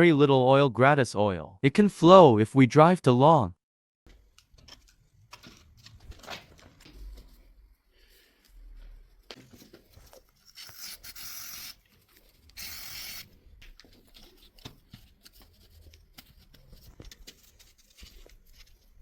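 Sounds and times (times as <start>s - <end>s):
clicks and handling of parts: 4.1s - 7.4s, 11.8s - 19.0s.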